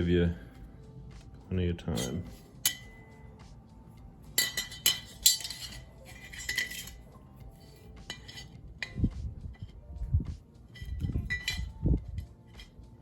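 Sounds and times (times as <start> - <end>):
metal tools clinking and clanking: 1.8 - 3.2, 4.4 - 9.8, 10.7 - 13.0.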